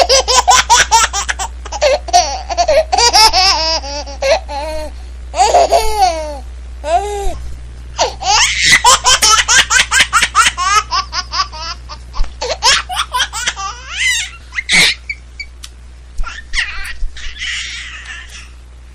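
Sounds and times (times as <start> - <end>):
young child giggling: 0.0 - 6.4, 8.0 - 15.2
child squealing: 13.7 - 15.2, 16.2 - 18.6.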